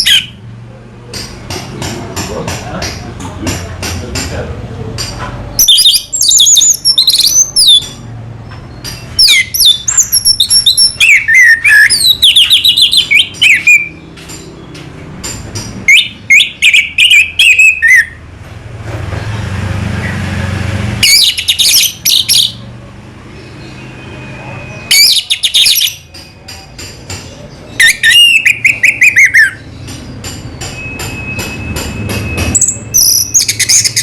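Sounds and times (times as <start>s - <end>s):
bird singing whistles and trills: 5.6s - 7.9s, 9.2s - 14.0s, 15.9s - 18.2s, 23.6s - 26.1s, 27.7s - 29.7s, 30.6s - 34.0s.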